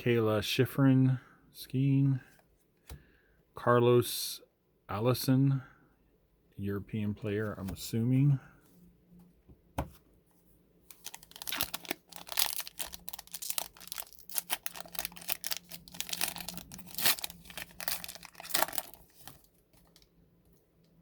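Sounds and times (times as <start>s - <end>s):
wrapper crinkling and tearing: 10.9s - 20.1s.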